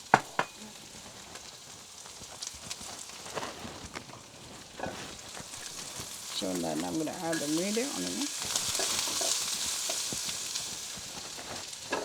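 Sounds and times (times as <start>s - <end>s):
food sizzling in a pan: 0.0s - 12.0s
spatula knocking against pan: 0.1s - 0.6s.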